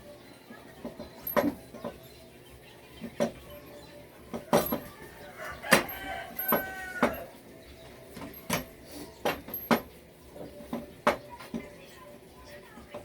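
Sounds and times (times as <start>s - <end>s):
sharp metal knocks and clinks: 5.7s - 7.3s, 8.2s - 9.9s.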